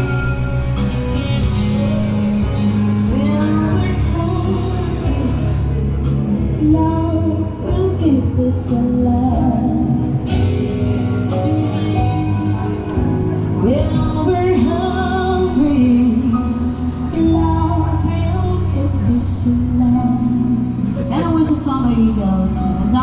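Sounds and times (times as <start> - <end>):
heavy bass line: 0.0 - 23.0
person singing: 0.0 - 23.0.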